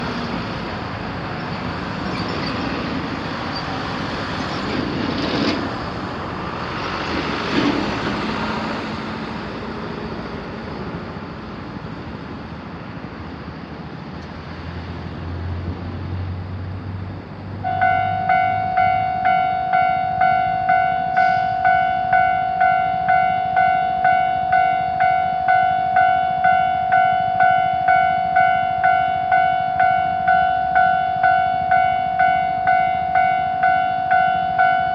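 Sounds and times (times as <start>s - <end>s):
outdoor traffic noise: 0.0s - 34.9s
railroad crossing warning bell: 17.6s - 34.9s.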